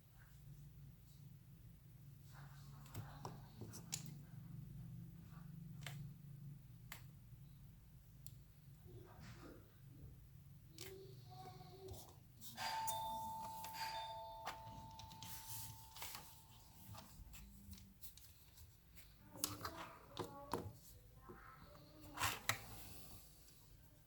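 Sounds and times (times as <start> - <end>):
clear ringing tone: 12.6 - 17.0.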